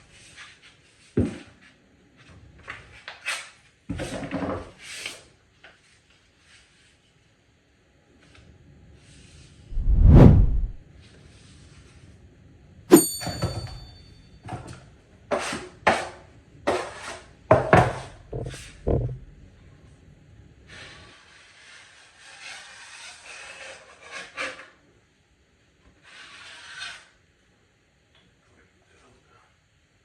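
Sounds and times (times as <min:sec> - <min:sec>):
sharp ringing metallic strike: 0:12.9 - 0:14.1.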